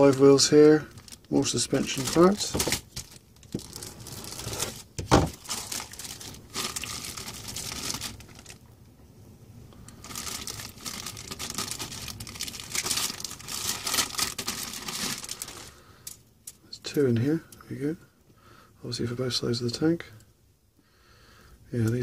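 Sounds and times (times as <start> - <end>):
plastic bags crinkling: 0.0 - 8.7, 9.8 - 16.2.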